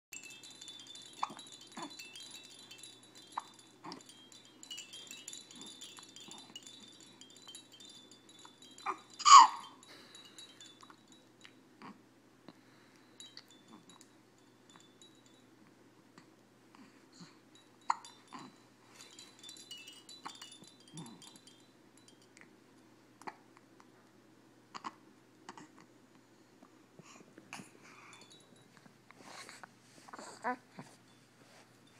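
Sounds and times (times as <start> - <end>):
faint high ringing tones: 0.1 - 11.9, 12.6 - 16.1, 17.2 - 23.1.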